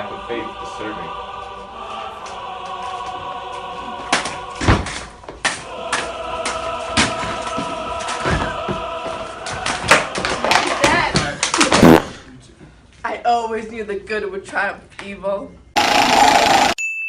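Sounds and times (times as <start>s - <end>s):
background music with choir: 0.0s - 11.1s.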